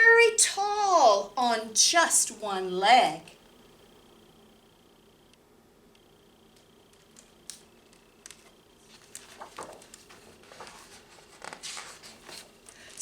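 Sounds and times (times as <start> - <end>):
faint rustling: 8.3 - 13.0.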